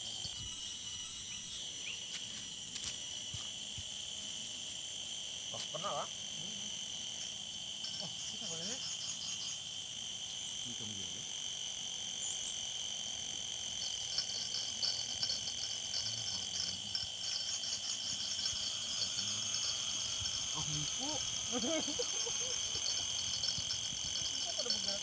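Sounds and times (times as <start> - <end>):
rapid pulsing trill: 0.0 - 2.1, 7.4 - 10.2, 12.6 - 25.0
insects high-pitched drones: 0.0 - 25.0.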